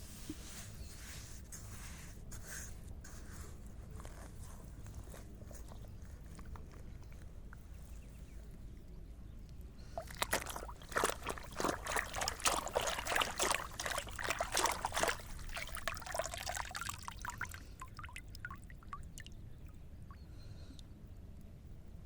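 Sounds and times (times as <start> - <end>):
water trickling and splashing: 9.8 - 20.2
water dripping: 10.0 - 20.2.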